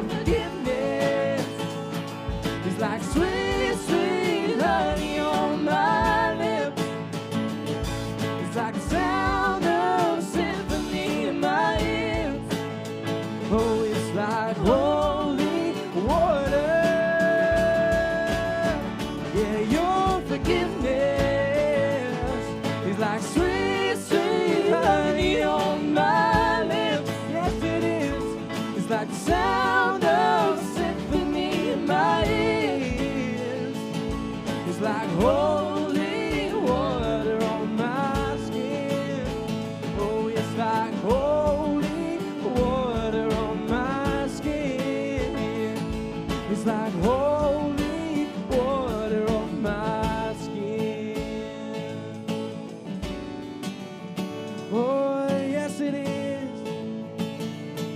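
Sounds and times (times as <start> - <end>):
person singing: 0.0 - 6.9, 8.4 - 12.8, 13.4 - 52.2
worship band music: 0.0 - 57.9.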